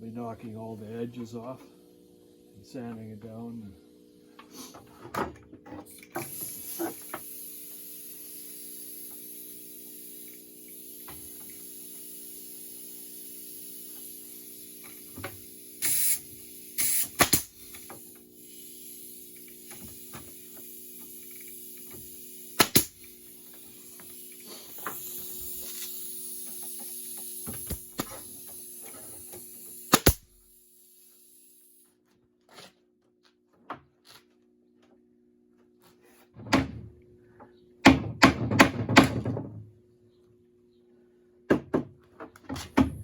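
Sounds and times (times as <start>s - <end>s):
steady low hum: 0.0s - 31.8s
nail gun firing: 13.3s - 24.2s, 24.8s - 30.5s.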